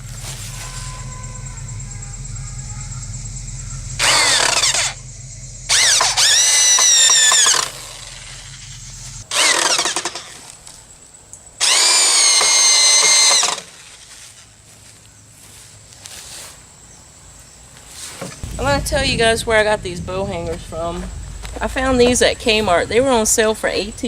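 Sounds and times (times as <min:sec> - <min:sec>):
cordless drill motor whining: 0:00.8 - 0:10.3, 0:11.6 - 0:13.8.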